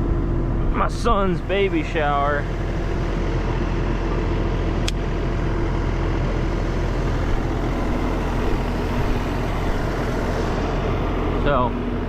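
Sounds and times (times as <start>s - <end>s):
skid steer diesel engine running: 0.0s - 12.0s.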